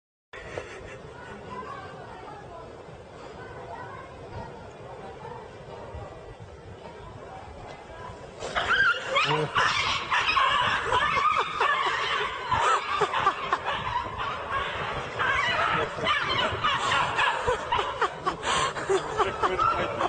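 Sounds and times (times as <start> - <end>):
people laughing and snickering: 0.4 - 2.0, 8.4 - 20.0.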